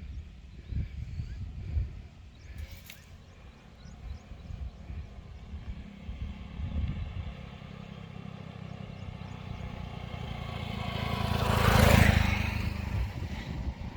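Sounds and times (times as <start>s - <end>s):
vehicle engine passing by: 3.3s - 13.9s.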